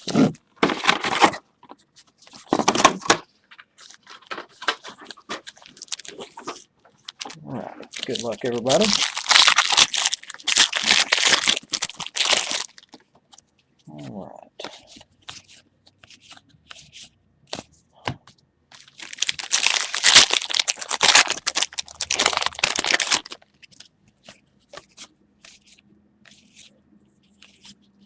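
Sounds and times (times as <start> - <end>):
wrappers tearing and crinkling: 3.8 - 12.9, 18.8 - 23.8.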